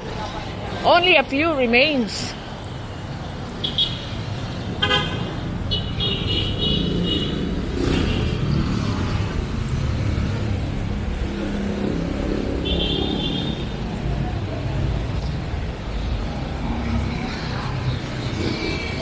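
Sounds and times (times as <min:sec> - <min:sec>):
engines rumbling: 0:00.0 - 0:19.0
vehicle horn toots: 0:04.8 - 0:08.1.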